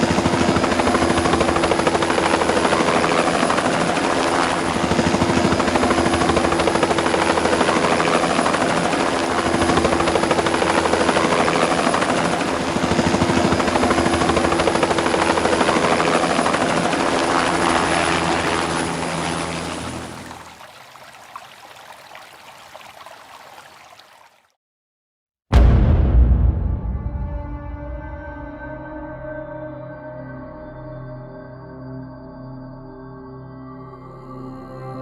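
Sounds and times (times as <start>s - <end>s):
helicopter rotor drone: 0.0s - 20.6s.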